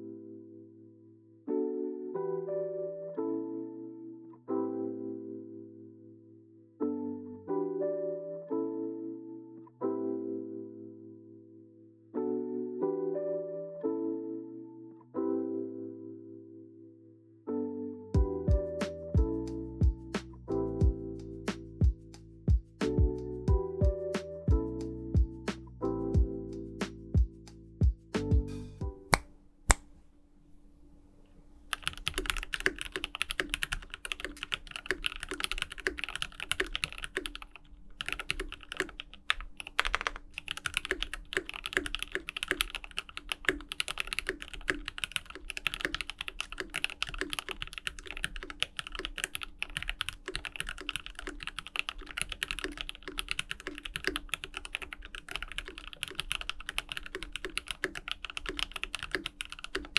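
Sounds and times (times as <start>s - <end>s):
fast typing on mechanical keyboard: 31.7s - 59.9s.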